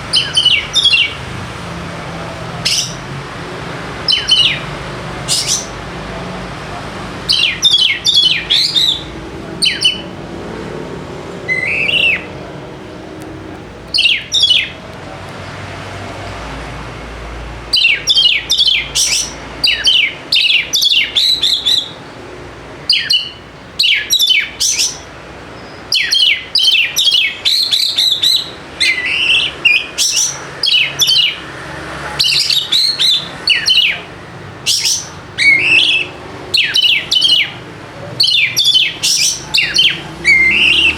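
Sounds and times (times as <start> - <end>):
bird singing whistled notes: 0.1 - 1.2, 4.1 - 4.7, 5.3 - 5.7, 7.3 - 10.1, 11.5 - 12.4, 13.9 - 14.8, 17.7 - 22.0, 22.9 - 31.4, 32.2 - 37.6, 38.2 - 40.9.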